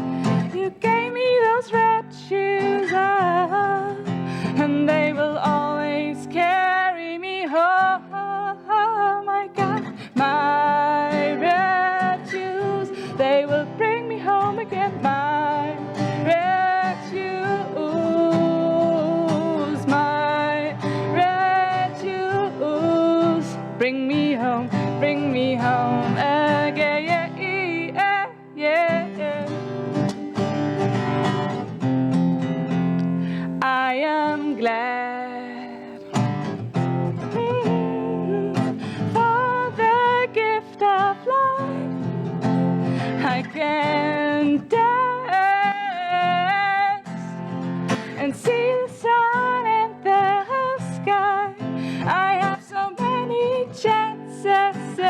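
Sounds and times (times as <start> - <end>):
person singing hymn-like song: 0.0 - 29.6, 33.6 - 36.0, 37.2 - 41.9, 42.9 - 47.3, 48.0 - 55.0
strummed acoustic guitar: 0.0 - 55.0.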